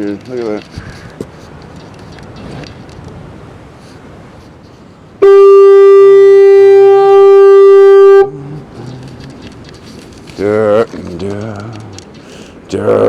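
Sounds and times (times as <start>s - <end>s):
fog horn blast: 5.2s - 8.8s.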